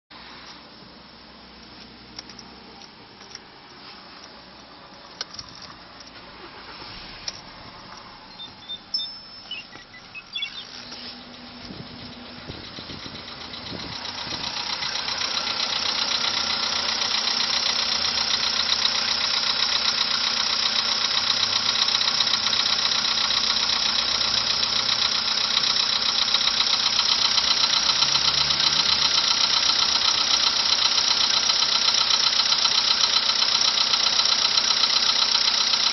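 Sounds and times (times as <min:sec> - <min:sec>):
car engine starting and knocking: 0:00.3 - 0:35.9
short beeps: 0:08.3 - 0:10.7.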